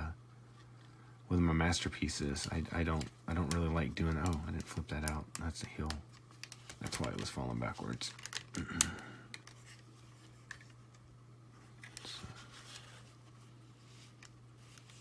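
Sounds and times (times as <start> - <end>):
steady low hum: 0.0 - 15.0
soft rustle: 9.5 - 15.0.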